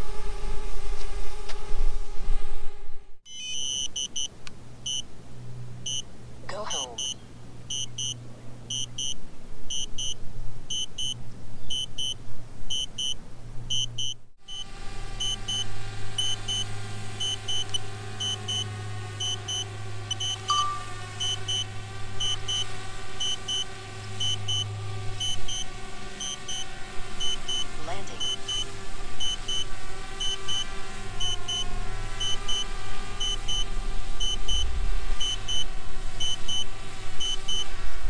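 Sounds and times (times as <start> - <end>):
steady low hum: 0.0 - 38.0
quick double beeps: 3.3 - 4.3, 7.0 - 14.2, 19.2 - 21.6.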